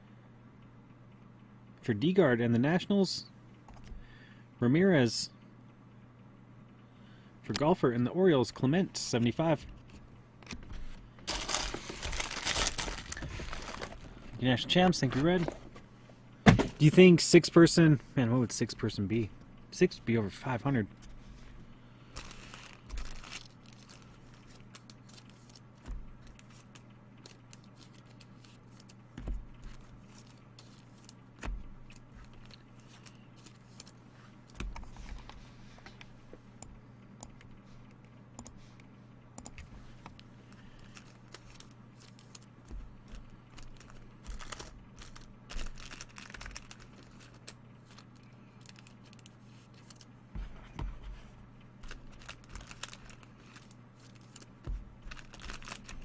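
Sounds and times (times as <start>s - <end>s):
steady low hum: 0.0s - 56.0s
wrappers crinkling and tearing: 11.2s - 14.4s, 22.1s - 29.0s, 29.6s - 31.2s, 40.7s - 42.5s, 43.1s - 50.1s, 51.8s - 56.0s
soft knocks of boxes set down: 16.5s - 16.8s.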